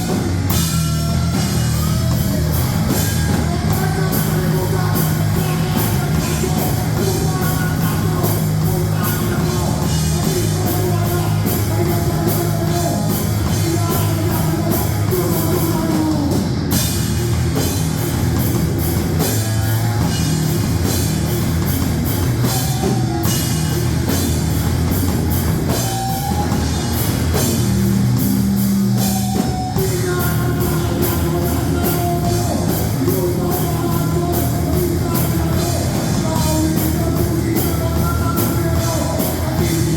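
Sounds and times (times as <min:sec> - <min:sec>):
person singing: 0:00.0 - 0:16.5, 0:29.0 - 0:39.9
distorted electric guitars: 0:00.0 - 0:39.9
drum kit pounding: 0:00.0 - 0:39.9.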